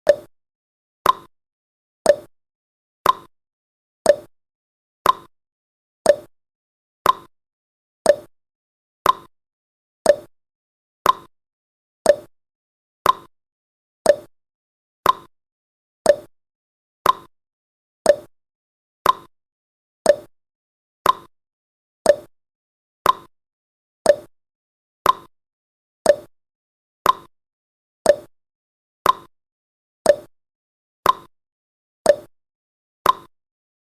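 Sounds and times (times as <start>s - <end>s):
timer ticking tick-tock: 0.0s - 0.3s, 1.0s - 1.3s, 2.0s - 2.3s, 3.0s - 3.3s, 4.0s - 4.3s, 5.0s - 5.3s, 6.0s - 6.3s, 7.0s - 7.3s, 8.0s - 8.3s, 9.0s - 9.3s, 10.0s - 10.3s, 11.0s - 11.3s, 12.0s - 12.3s, 13.0s - 13.3s, 14.0s - 14.4s, 15.0s - 15.3s, 16.0s - 16.3s, 17.0s - 17.3s, 18.0s - 18.4s, 19.0s - 19.3s, 20.0s - 20.4s, 21.0s - 21.3s, 22.0s - 22.4s, 23.0s - 23.3s, 24.0s - 24.4s, 25.0s - 25.3s, 26.0s - 26.4s, 27.0s - 27.4s, 28.0s - 28.4s, 29.0s - 29.4s, 30.0s - 30.4s, 31.0s - 31.4s, 32.0s - 32.4s, 33.0s - 33.4s.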